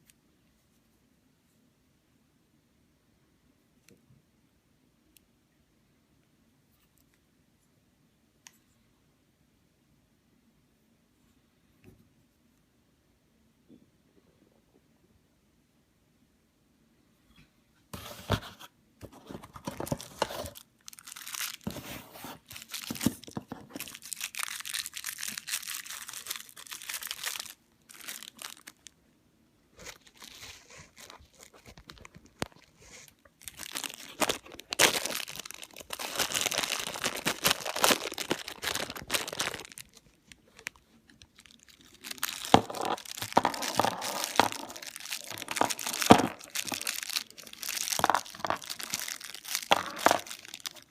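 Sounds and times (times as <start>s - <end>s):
packaging crinkling and tearing: 19.0s - 28.9s, 29.8s - 50.9s.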